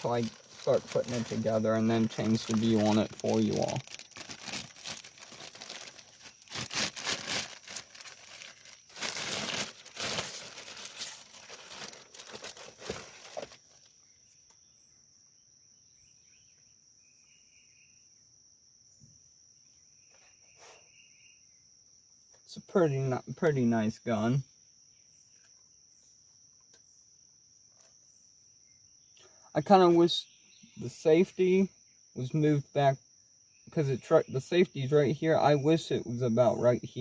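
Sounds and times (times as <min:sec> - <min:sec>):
plastic packaging crinkling: 0:00.0 - 0:13.9
faint chirps: 0:00.0 - 0:27.1, 0:27.8 - 0:37.0
insect trill: 0:00.0 - 0:37.0.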